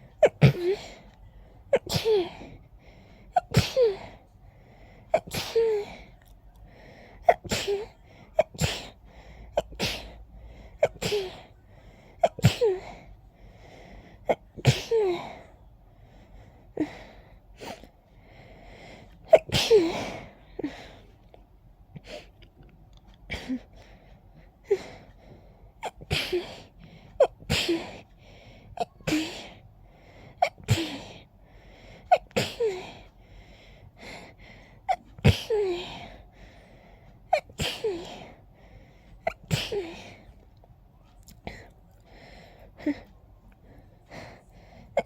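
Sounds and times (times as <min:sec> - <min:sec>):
person sneezing: 0:00.2 - 0:00.9, 0:01.8 - 0:02.5, 0:03.4 - 0:04.2, 0:09.6 - 0:10.2, 0:10.8 - 0:11.5, 0:39.3 - 0:40.1.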